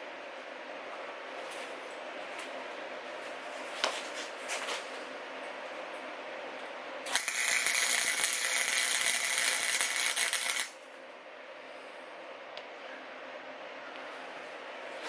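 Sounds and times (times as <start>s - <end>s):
arc welder crackling: 7.0s - 10.8s.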